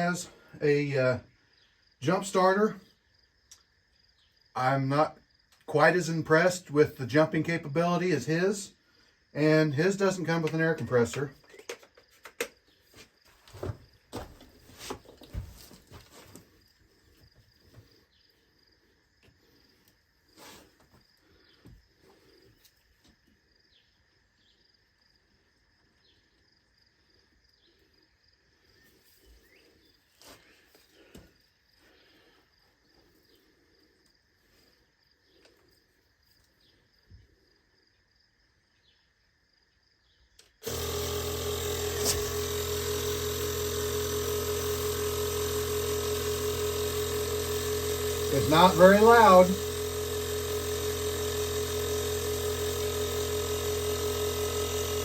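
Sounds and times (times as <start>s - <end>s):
electric air compressor humming: 40.6s - 55.0s.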